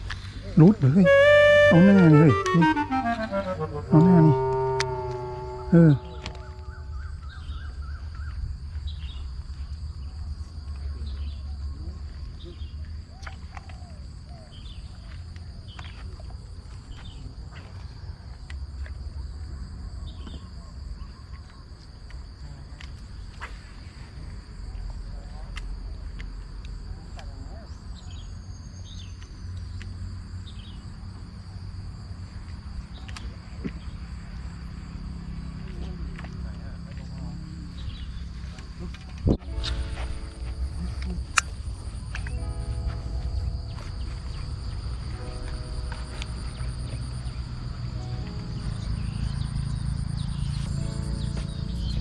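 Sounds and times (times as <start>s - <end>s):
insect drone: 0.0s - 52.0s
warbling call: 0.6s - 7.1s
bird chirps: 0.7s - 9.2s.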